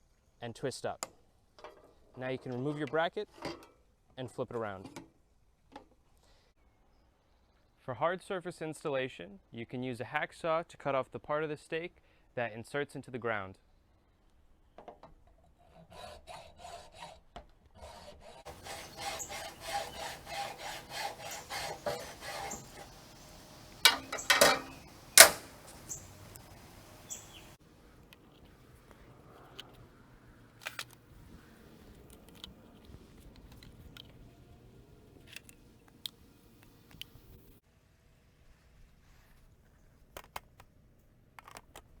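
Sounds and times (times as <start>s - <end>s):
hacksaw cutting: 18.0s - 27.6s
sharp knocks: 18.5s - 27.6s.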